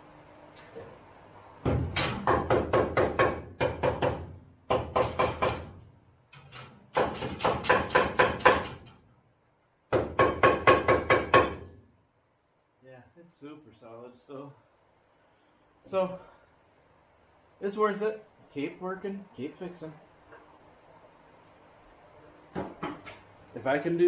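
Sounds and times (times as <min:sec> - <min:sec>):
hammer striking steel frame: 0:01.6 - 0:05.8, 0:06.4 - 0:09.0, 0:09.9 - 0:11.8.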